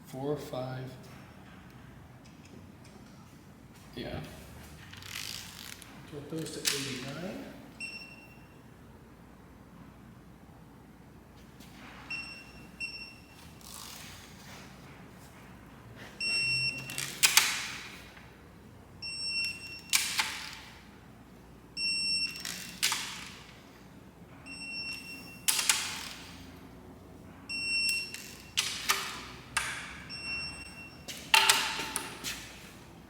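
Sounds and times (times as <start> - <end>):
wrench scraping creak: 4.8 - 6.0, 13.6 - 14.5
torque wrench beeps: 7.8 - 8.6, 12.1 - 13.4, 16.2 - 17.0, 19.0 - 20.0, 21.8 - 23.0, 24.5 - 26.2, 27.5 - 28.6, 30.1 - 31.5.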